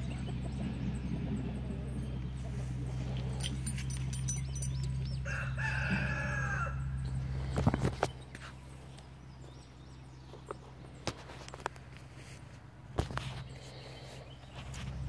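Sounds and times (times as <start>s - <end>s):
low steady hum: 0.0s - 15.0s
rooster crowing: 5.2s - 7.0s.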